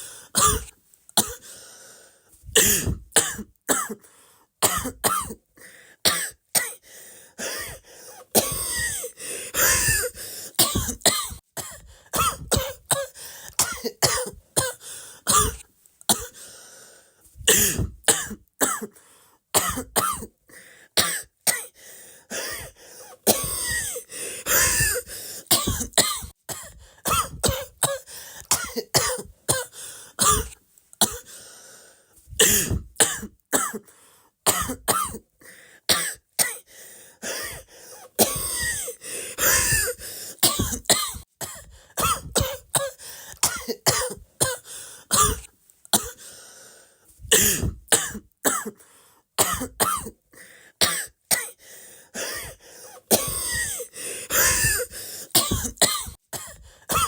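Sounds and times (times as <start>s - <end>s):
person coughing: 0.0s - 1.5s, 2.5s - 4.0s, 4.6s - 5.4s, 6.1s - 6.8s, 7.4s - 16.4s, 17.4s - 19.0s, 19.6s - 20.3s, 21.0s - 31.3s, 32.4s - 33.9s, 34.5s - 35.2s, 37.2s - 46.2s, 47.3s - 48.8s, 49.4s - 50.2s, 52.2s - 57.0s.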